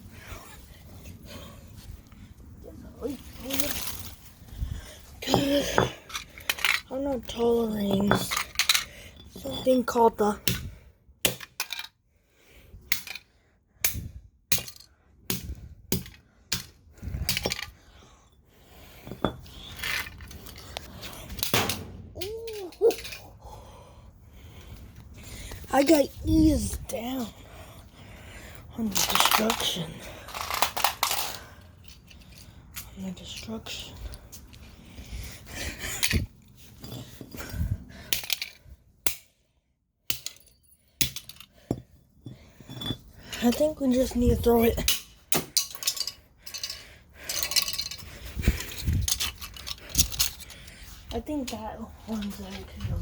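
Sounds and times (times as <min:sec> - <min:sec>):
plastic chargers being smashed: 0:28.9 - 0:31.3.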